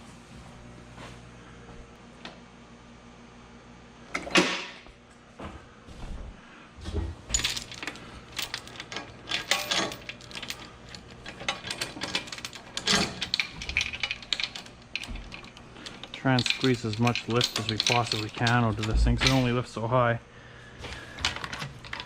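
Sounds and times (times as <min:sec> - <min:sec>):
metal parts and tools handled: 0:07.3 - 0:19.7, 0:21.2 - 0:22.0.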